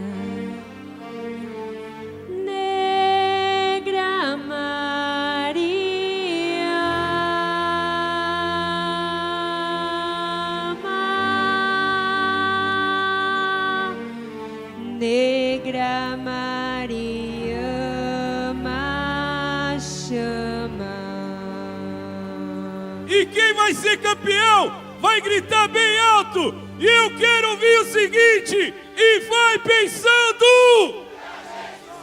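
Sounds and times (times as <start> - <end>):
person singing long notes: 16.8 - 31.1
sustained chords: 23.1 - 30.1.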